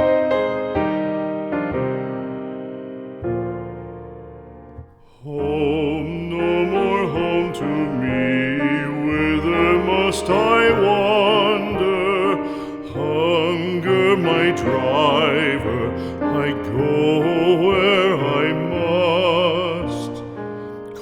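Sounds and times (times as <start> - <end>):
piano accompaniment: 0.0 - 21.0
person singing with vibrato: 5.0 - 21.0.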